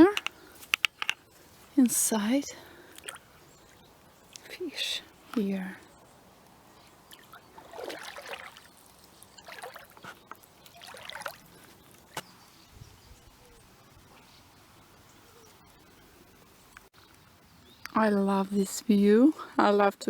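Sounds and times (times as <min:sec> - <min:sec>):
water splashing and sloshing: 0:01.1 - 0:05.6, 0:06.2 - 0:12.5.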